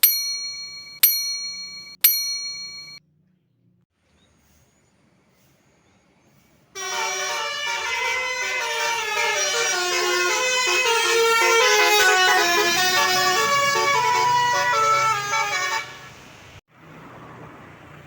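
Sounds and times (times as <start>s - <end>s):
bell-like dings: 0.0s - 3.0s
musical bus horn tune: 6.8s - 16.6s.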